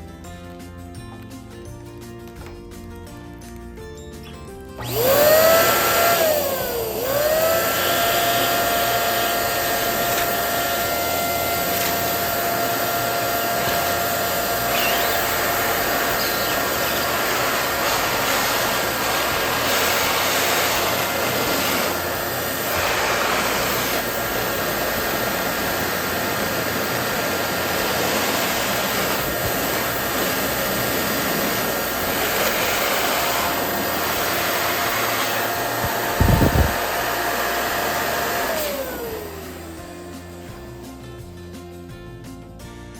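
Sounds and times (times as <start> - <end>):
balloon inflator blower whirring: 4.8 - 41.0.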